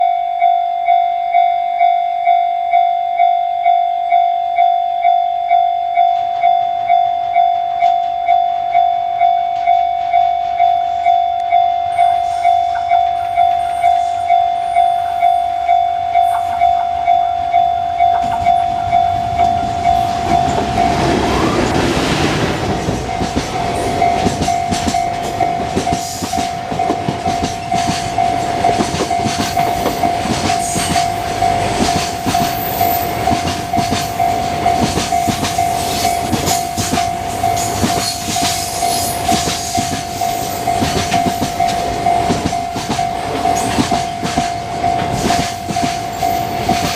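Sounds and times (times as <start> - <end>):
level crossing bell ringing: 0.0 - 21.7, 22.3 - 46.9
freight train rumbling past: 9.6 - 46.9.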